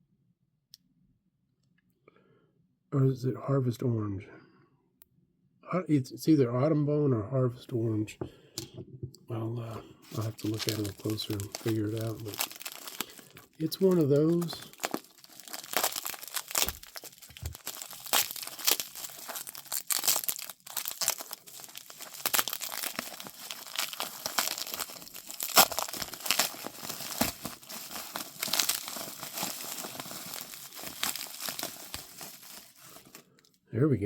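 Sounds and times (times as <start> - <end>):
packing material crinkling and tearing: 10.0 - 33.3.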